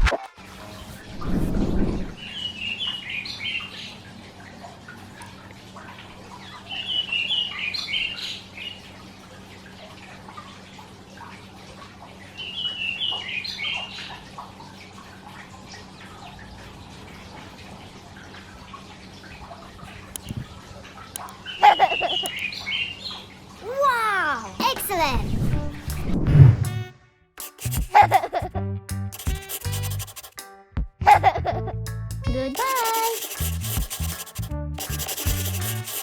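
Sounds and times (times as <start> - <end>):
brief low rumble: 25.3 - 26.9.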